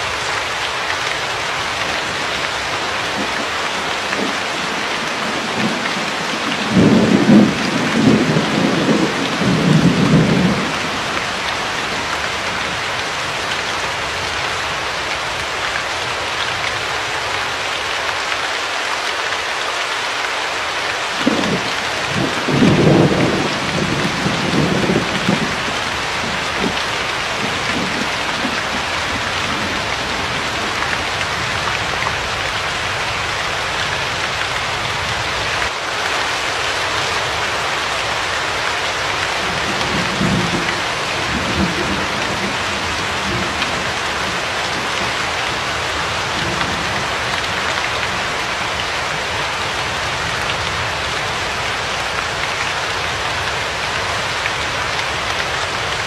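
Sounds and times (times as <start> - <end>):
heavy rain hissing: 0.0 - 56.0
thunder rumbling: 1.6 - 12.7, 21.2 - 35.5, 39.3 - 51.0.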